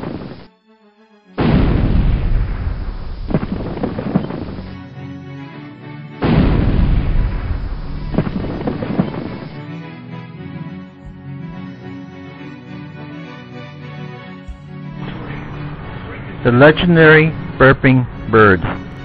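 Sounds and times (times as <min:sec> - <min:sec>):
dramatic music: 0:00.1 - 0:19.0
deep booming crashes: 0:01.4 - 0:04.7, 0:06.2 - 0:09.4.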